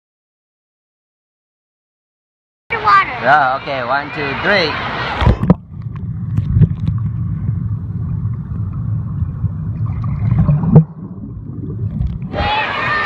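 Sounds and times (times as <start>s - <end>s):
low rumble on microphone: 5.1s - 13.0s.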